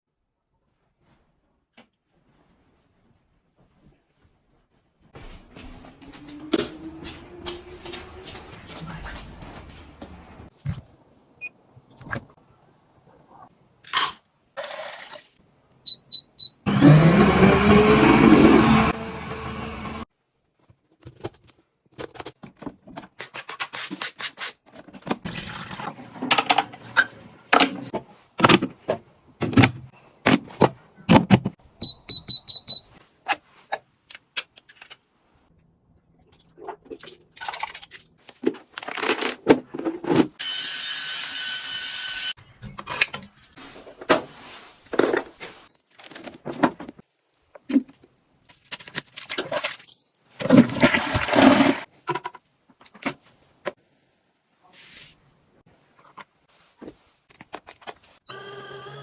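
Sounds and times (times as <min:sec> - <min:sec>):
high electronic appliance beeps: 0:15.9 - 0:16.6, 0:31.8 - 0:32.9, 0:40.4 - 0:42.3.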